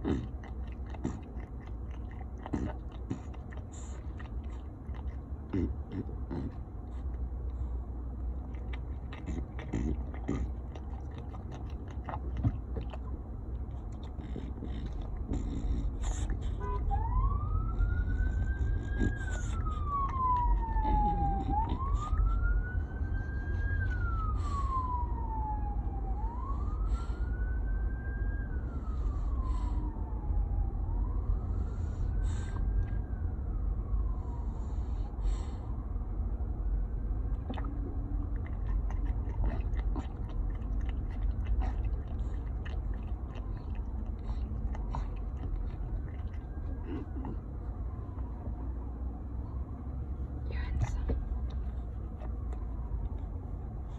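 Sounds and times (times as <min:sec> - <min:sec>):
emergency siren wailing: 0:15.8 - 0:38.8, 0:40.3 - 0:50.5.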